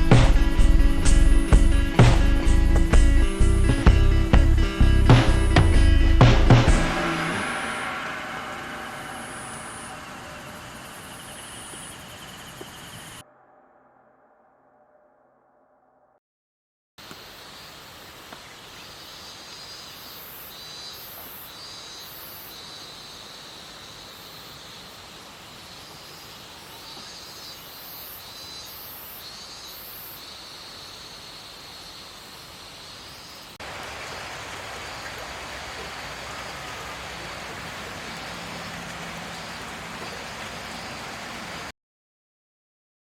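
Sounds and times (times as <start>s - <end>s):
even rushing noise: 5.1s - 11.6s
steady hiss: 6.4s - 13.2s, 17.0s - 41.7s.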